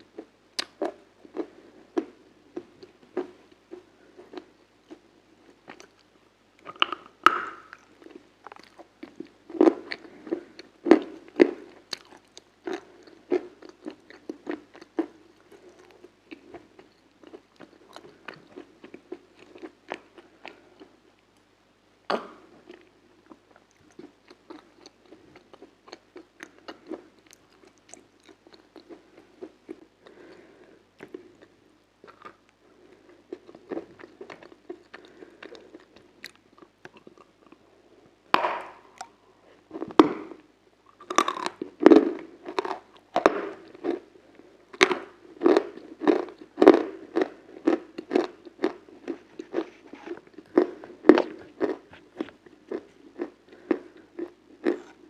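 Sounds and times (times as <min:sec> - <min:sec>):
person chewing crunchy food: 0:00.1 - 0:21.0, 0:22.6 - 0:37.8, 0:38.4 - 0:55.0.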